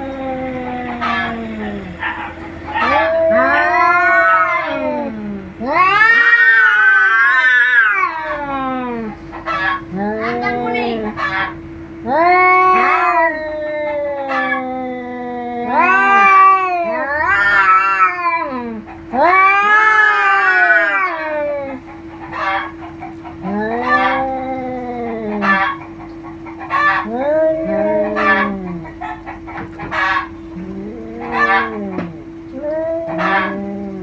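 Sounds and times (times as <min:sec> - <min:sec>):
cats yowling in a fight: 0:00.0 - 0:34.0
sharp cat cries: 0:02.7 - 0:09.0, 0:09.6 - 0:21.8, 0:23.4 - 0:25.8, 0:26.7 - 0:28.9, 0:30.0 - 0:34.0.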